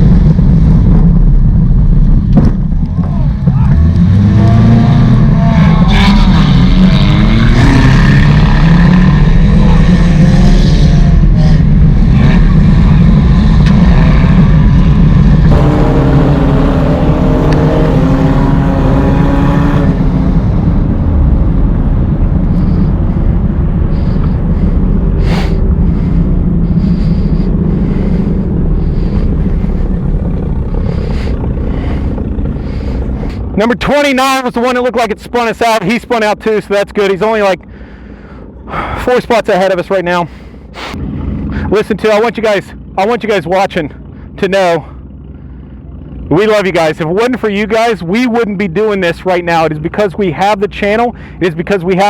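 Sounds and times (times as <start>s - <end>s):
race car engine: 0.0s - 52.0s
sharp knocks: 2.3s - 2.6s.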